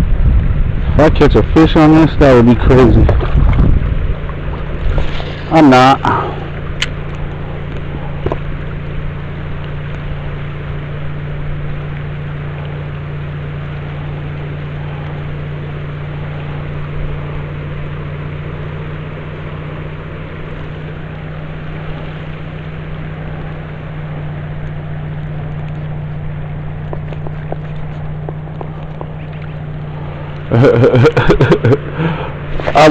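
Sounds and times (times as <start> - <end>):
wind noise: 0.0 - 5.5
boat motor humming: 0.0 - 32.9
water wash: 0.0 - 32.9.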